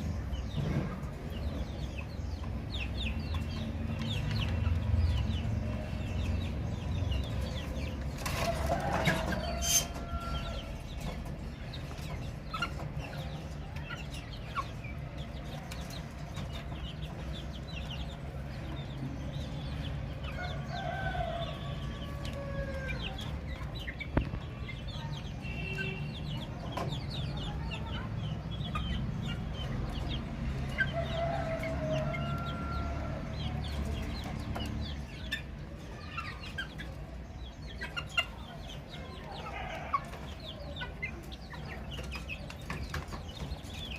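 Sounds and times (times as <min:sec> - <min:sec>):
baby chicks peeping: 0:00.0 - 0:43.9.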